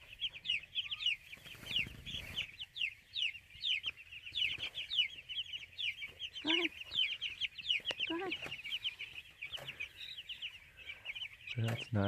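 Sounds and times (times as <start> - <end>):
chicks peeping: 0.0 - 12.0.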